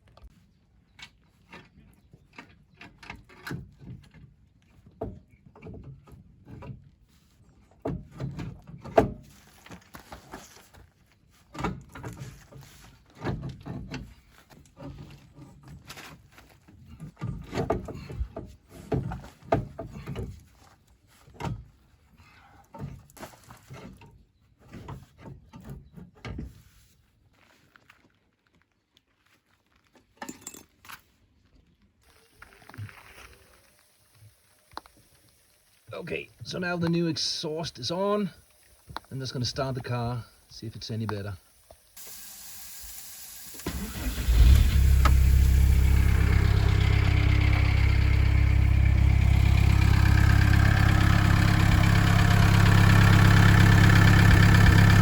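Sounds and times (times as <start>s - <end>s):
hand tools and metal parts clunking: 30.0s - 31.1s.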